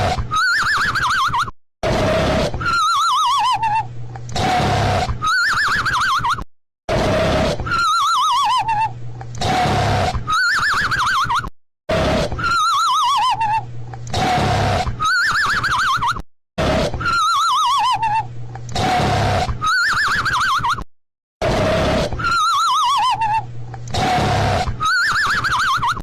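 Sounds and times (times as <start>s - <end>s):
cartoon snoring: 0.0s - 0.3s, 1.8s - 2.8s, 4.4s - 5.2s, 6.9s - 7.9s, 9.4s - 10.5s, 11.9s - 12.6s, 14.1s - 15.0s, 16.6s - 17.2s, 18.7s - 19.9s, 21.4s - 22.5s, 23.9s - 25.1s.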